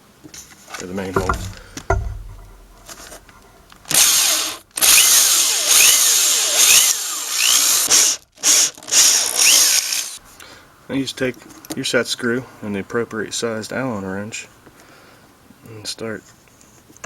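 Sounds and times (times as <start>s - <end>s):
electric drill boring into wood: 3.9s - 10.2s.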